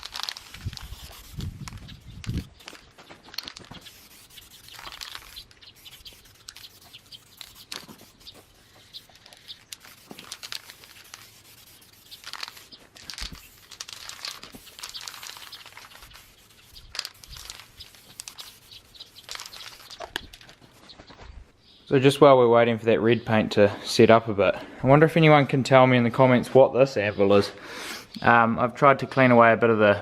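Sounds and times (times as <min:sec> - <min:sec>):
paintbrush scratchy brushing: 0:00.0 - 0:20.9.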